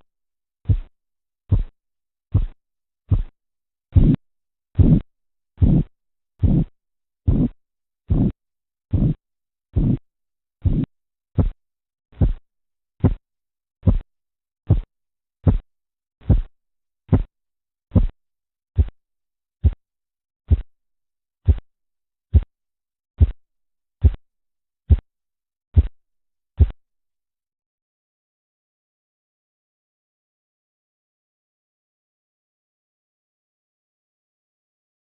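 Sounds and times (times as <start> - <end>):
pulse thumps through stethoscope: 0.7 - 0.9, 1.5 - 1.7, 2.3 - 4.2, 4.8 - 9.2, 9.8 - 10.0, 10.6 - 11.6, 12.2 - 12.4, 13.0 - 13.2, 13.8 - 14.1, 14.7 - 16.5, 17.1 - 17.3, 17.9 - 18.2, 18.8 - 19.0, 20.5 - 20.7, 21.4 - 21.6, 22.3 - 22.5, 23.2 - 23.4, 24.0 - 24.2, 24.9 - 25.1, 25.8 - 26.0, 26.6 - 26.8.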